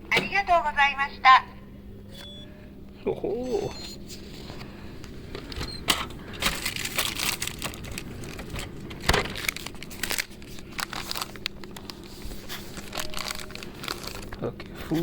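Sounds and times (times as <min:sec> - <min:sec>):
plastic packaging crinkling: 0:06.4 - 0:14.5.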